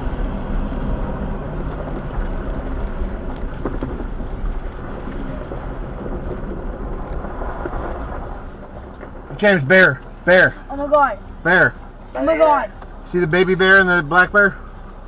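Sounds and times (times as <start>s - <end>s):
engine and tyre rumble inside car: 0.0s - 15.0s.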